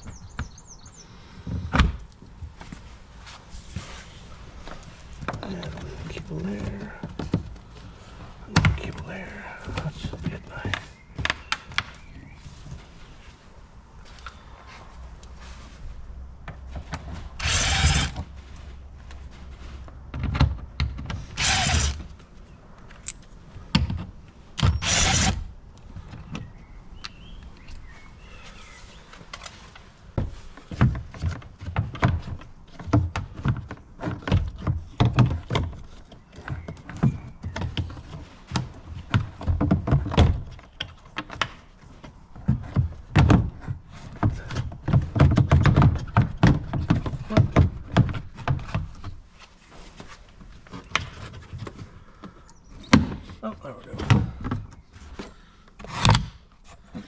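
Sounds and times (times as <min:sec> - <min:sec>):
loud rasping bursts: 0:17.3 - 0:18.3, 0:21.2 - 0:22.2, 0:24.6 - 0:25.5
clicks and knocks of car parts: 0:19.9 - 0:21.4, 0:22.8 - 0:24.8, 0:29.2 - 0:49.2, 0:54.0 - 0:57.0.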